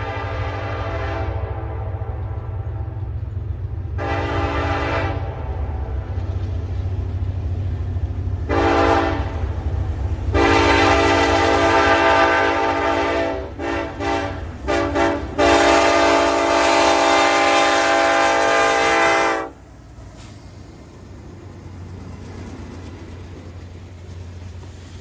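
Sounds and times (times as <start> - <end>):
train horn blasts: 0.0 - 3.2, 3.9 - 6.3, 8.4 - 9.6, 10.2 - 19.6
passing train rumble: 0.0 - 25.0.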